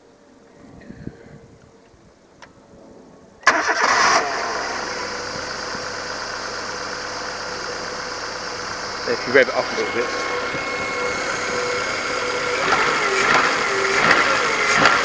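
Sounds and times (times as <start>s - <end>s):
faint click: 1.6s - 2.6s
car engine starting and idling: 3.4s - 15.0s.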